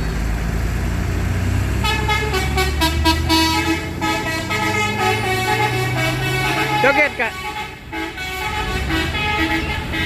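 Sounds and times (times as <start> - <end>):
bus engine running: 0.0 - 10.0
multi-tone air horns tune: 1.8 - 10.0.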